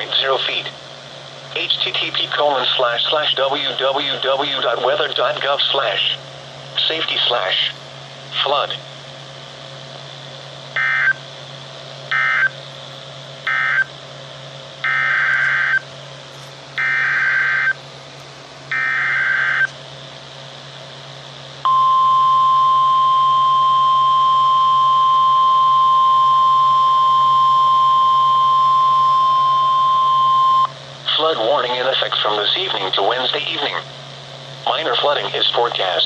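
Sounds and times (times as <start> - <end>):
steady attention tone: 10.7 - 16.1, 16.7 - 17.8, 18.7 - 19.8, 21.6 - 33.9
data tone bursts: 13.5 - 13.9, 18.7 - 19.7, 21.7 - 30.7.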